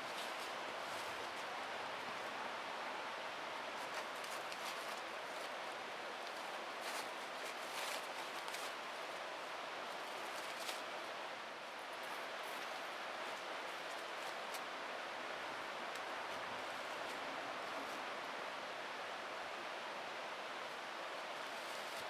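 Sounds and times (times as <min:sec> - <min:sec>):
faint rustles and ticks: 0:00.0 - 0:02.4, 0:03.6 - 0:11.1, 0:11.7 - 0:14.7.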